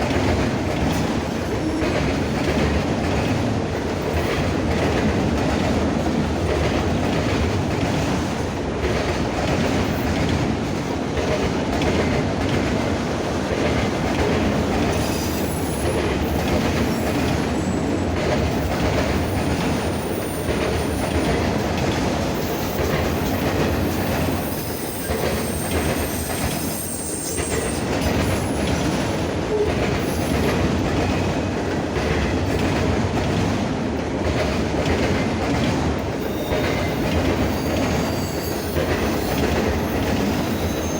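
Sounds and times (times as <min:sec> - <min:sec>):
high-pitched wheel squeal: 0:36.3 - 0:39.4, 0:40.0 - 0:40.9.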